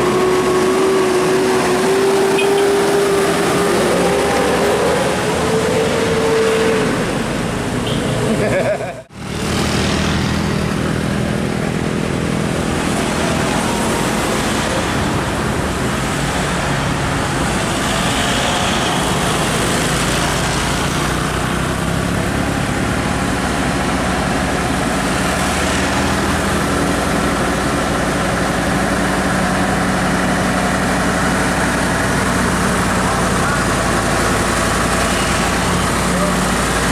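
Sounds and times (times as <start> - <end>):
road traffic: 0.0 - 36.9
bus engine idling: 10.2 - 36.9.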